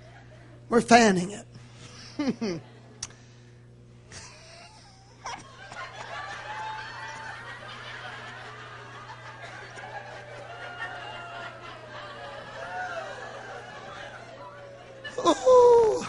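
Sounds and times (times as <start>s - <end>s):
crowd laughing and murmuring: 5.3s - 16.0s.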